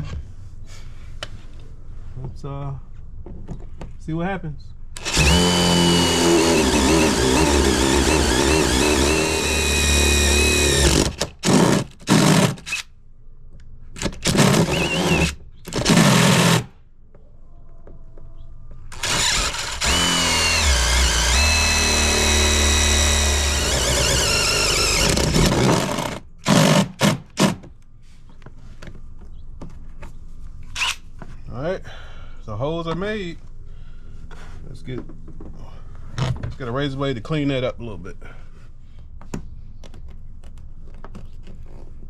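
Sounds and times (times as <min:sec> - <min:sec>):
power drill whining: 0:05.0 - 0:12.8, 0:14.2 - 0:16.7, 0:18.9 - 0:27.5.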